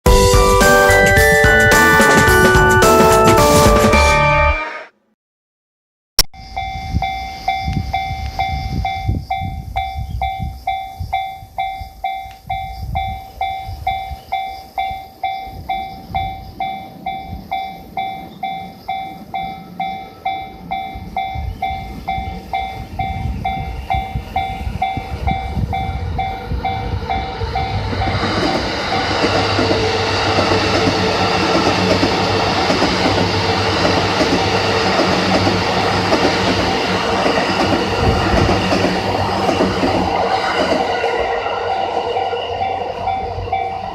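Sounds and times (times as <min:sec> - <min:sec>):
electric train passing: 0:00.1 - 0:04.5, 0:06.5 - 0:43.9
level crossing warning bell: 0:00.1 - 0:04.6, 0:06.4 - 0:28.2.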